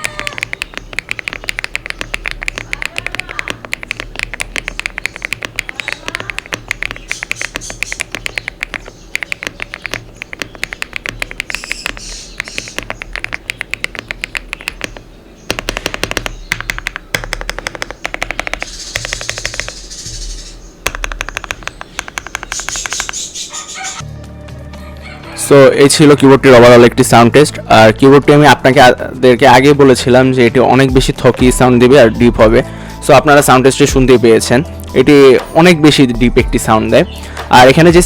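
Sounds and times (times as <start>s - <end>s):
thocky mechanical keyboard typing: 0.0s - 20.2s, 20.8s - 23.3s.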